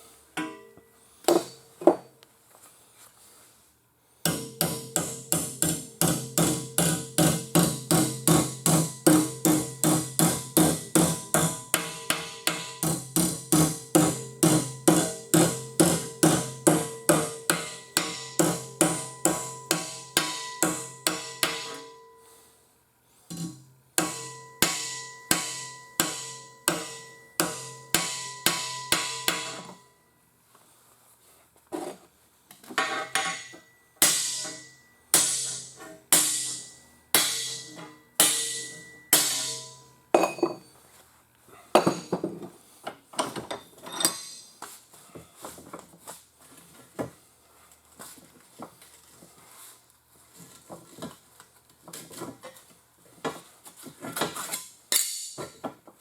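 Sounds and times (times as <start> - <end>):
hammer striking sheet metal: 0.4 - 1.6, 4.3 - 22.2, 23.3 - 29.8, 32.8 - 40.5, 44.0 - 44.5, 54.9 - 55.6.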